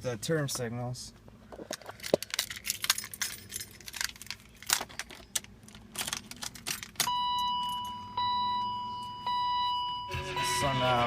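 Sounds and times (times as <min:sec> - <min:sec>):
keys jangling and clicking: 0:01.7 - 0:08.0
car warning chime: 0:07.1 - 0:11.0.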